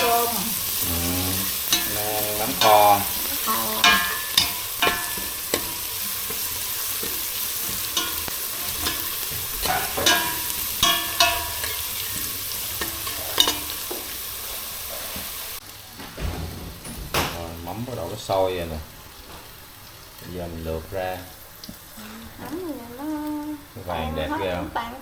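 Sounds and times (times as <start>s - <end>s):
pot bubbling and sizzling: 0.0s - 25.0s
utensil clinking against pot: 1.5s - 14.2s.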